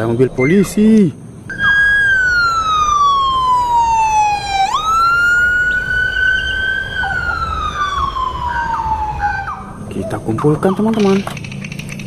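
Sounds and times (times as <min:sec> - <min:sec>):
toy police siren wailing: 0:01.5 - 0:09.8.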